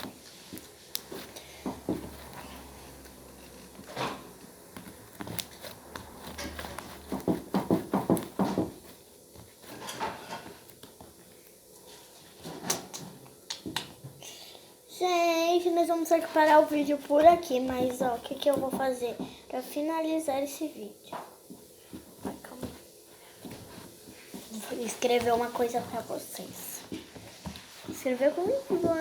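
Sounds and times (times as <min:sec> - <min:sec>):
slime squishing by hand: 0:00.0 - 0:11.6.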